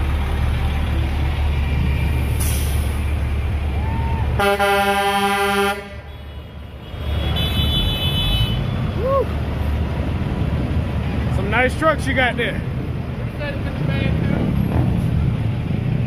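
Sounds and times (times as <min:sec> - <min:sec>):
passing vehicles rumbling: 0:00.0 - 0:16.0
truck horn blast: 0:04.4 - 0:08.8.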